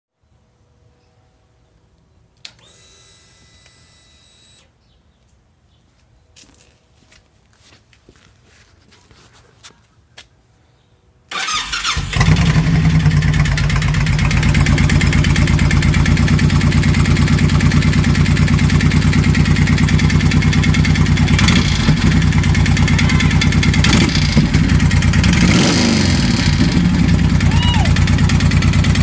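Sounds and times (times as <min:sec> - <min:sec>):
starter motor cranking: 0:11.3 - 0:29.0
motorcycle engine idling: 0:11.4 - 0:29.0
engine knocking: 0:11.8 - 0:29.0.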